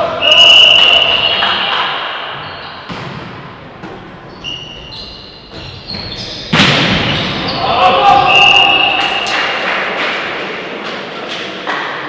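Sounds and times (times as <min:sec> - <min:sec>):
reverberant sports hall noise: 0:00.0 - 0:12.0
sneaker squeaks on court: 0:04.2 - 0:07.6.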